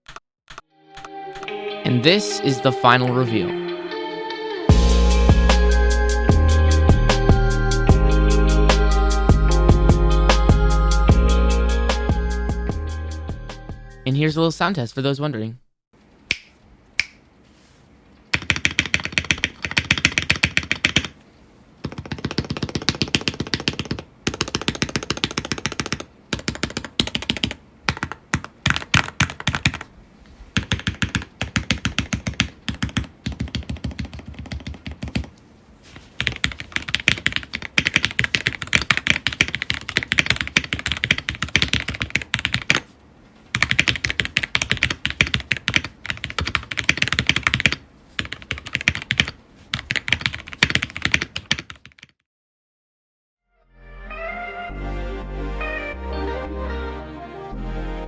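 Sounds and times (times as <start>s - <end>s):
mechanical keyboard typing: 0.0s - 1.5s, 18.3s - 21.2s, 21.8s - 29.9s, 30.6s - 35.3s, 36.2s - 42.9s, 43.5s - 52.2s.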